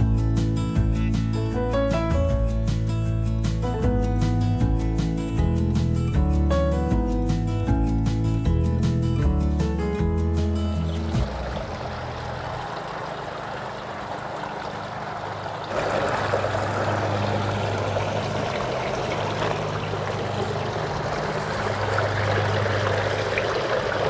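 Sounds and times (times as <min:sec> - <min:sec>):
fountain water splashing: 0:10.7 - 0:24.0
low hum: 0:10.7 - 0:24.0.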